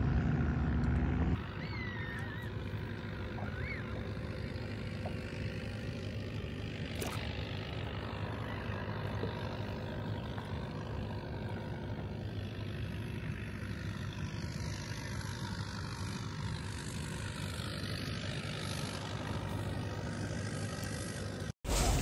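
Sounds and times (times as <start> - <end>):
low engine drone: 0.0 - 22.0.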